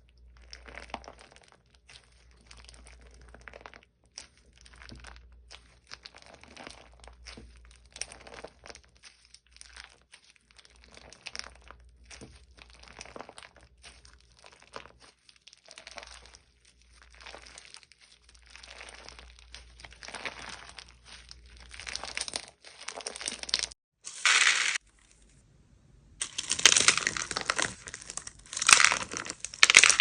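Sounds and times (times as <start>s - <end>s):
crunchy slime crackling and popping: 0.0s - 25.4s, 26.2s - 30.0s.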